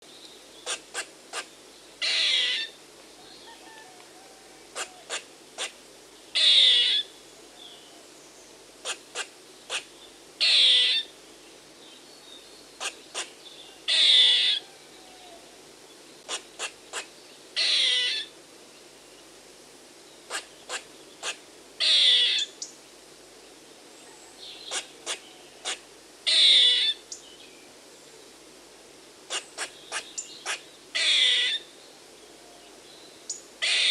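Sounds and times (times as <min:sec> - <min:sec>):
squirrel calling: 0:00.6 - 0:02.8, 0:04.7 - 0:07.9, 0:08.8 - 0:11.1, 0:12.8 - 0:15.4, 0:16.2 - 0:18.3, 0:20.3 - 0:22.7, 0:24.5 - 0:27.2, 0:29.3 - 0:31.7, 0:33.3 - 0:33.9.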